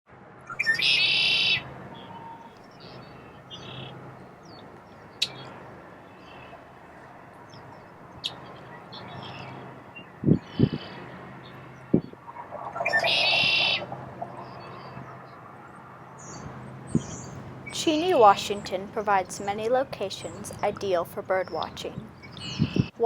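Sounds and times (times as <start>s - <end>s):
faint steady low hum: 0.2s - 23.0s
wild birds calling: 0.5s - 23.0s.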